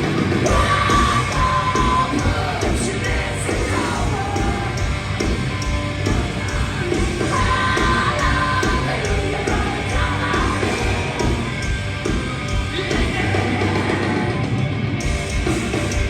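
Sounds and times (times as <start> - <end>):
distorted guitars: 0.0 - 16.0
drums and cymbal hits: 0.0 - 16.0
shouted vocals: 0.4 - 4.8, 6.8 - 11.5.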